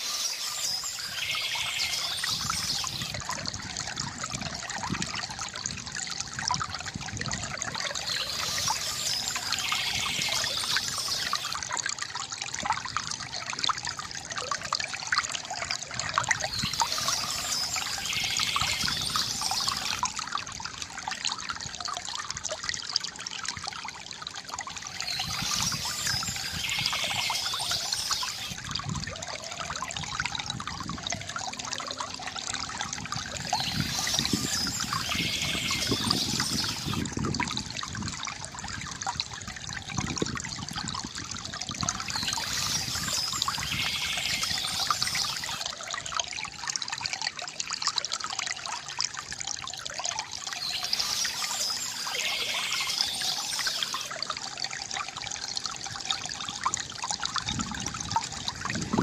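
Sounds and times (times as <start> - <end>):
stream babbling over stones: 0.0 - 59.0.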